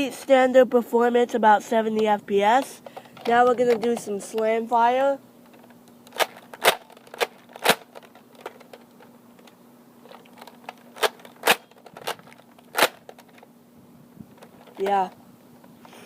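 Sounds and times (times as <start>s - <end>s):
toy blaster plastic clacks: 2.0s - 4.5s, 5.5s - 8.8s, 9.4s - 13.4s.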